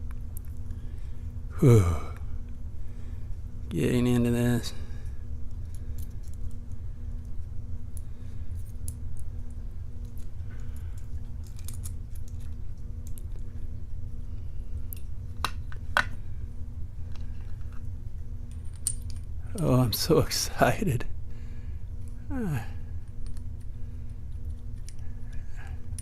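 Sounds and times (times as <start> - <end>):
steady low hum: 0.0 - 26.0
metal tools clicking on lock: 18.7 - 19.2.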